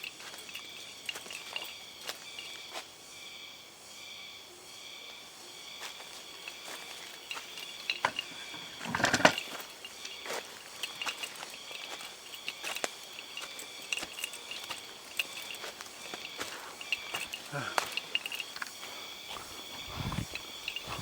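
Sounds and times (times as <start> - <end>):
insects calling in pulsing chorus: 0.0 - 21.0
rustling crunch: 5.8 - 21.0.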